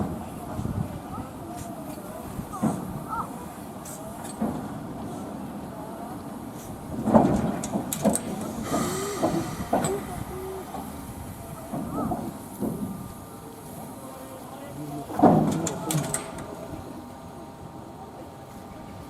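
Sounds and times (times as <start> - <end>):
train moving slowly: 0.0 - 19.0
metallic clanks: 7.3 - 11.9
brief hiss: 8.2 - 13.1.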